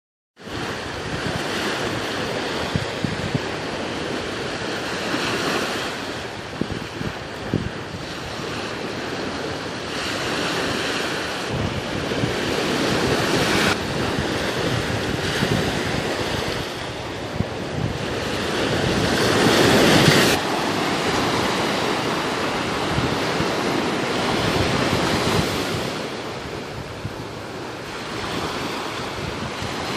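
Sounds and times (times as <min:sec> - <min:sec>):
ocean waves breaking on shore: 0:00.4 - 0:29.9
wind buffeting microphone: 0:00.4 - 0:29.9.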